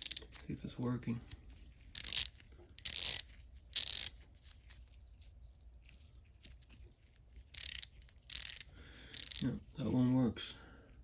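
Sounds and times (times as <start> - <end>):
faint ratchet clicks: 0.0 - 0.2, 2.0 - 4.2, 7.5 - 9.5
ratchet rattling: 0.0 - 0.3, 1.9 - 4.2, 7.5 - 9.5.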